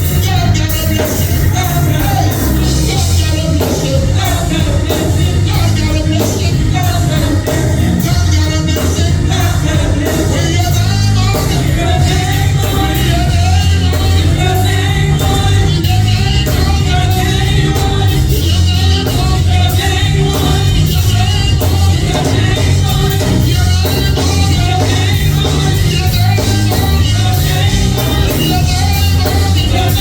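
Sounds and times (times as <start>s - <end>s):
worship singing over a band: 0.0s - 30.0s.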